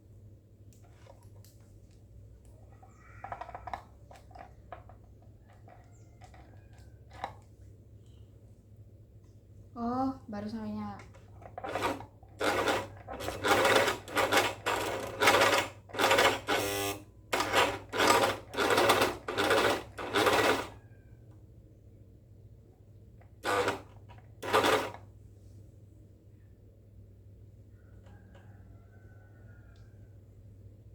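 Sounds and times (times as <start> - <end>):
overlock sewing machine running: 11.4 - 20.8, 23.4 - 25.0.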